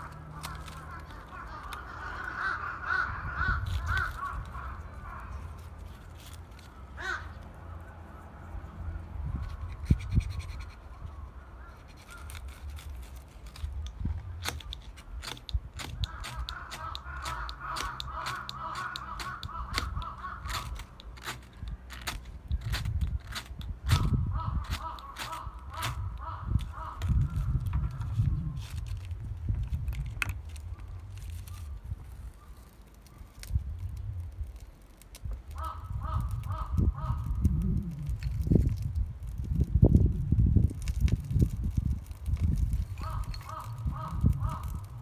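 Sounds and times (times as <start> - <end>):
wood fire crackling and popping: 12.0 - 26.7, 32.8 - 35.7.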